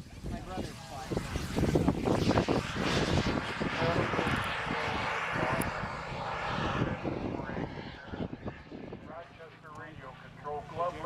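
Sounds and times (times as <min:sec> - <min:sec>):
propeller airplane passing: 0:00.0 - 0:11.0.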